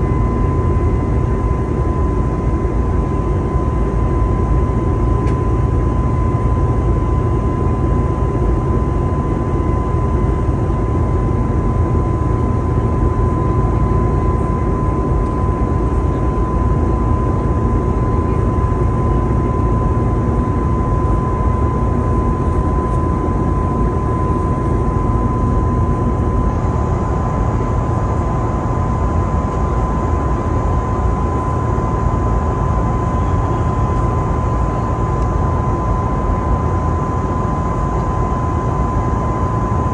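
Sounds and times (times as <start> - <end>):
airliner cabin rumble: 8.4 - 34.9.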